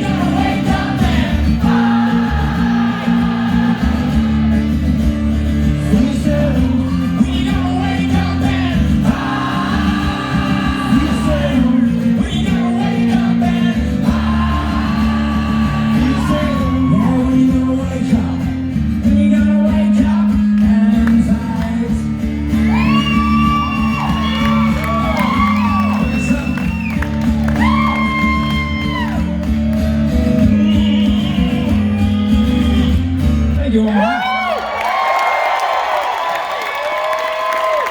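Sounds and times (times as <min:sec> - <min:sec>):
man singing: 0:00.0 - 0:04.5, 0:05.6 - 0:22.3, 0:30.1 - 0:34.4
strummed acoustic guitar: 0:00.0 - 0:33.8.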